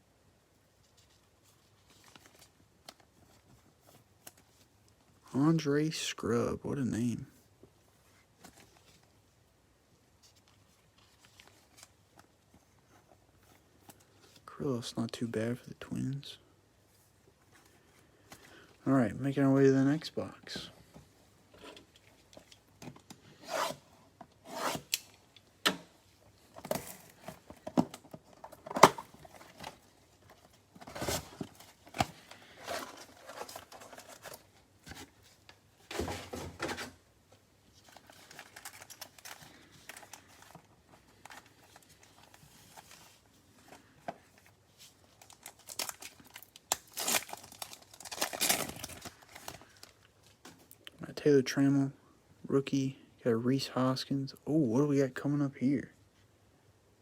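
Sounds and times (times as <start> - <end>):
foil packs rustling: 26.5 - 35.3, 37.7 - 50.4
plastic wrapping tearing: 45.2 - 49.9.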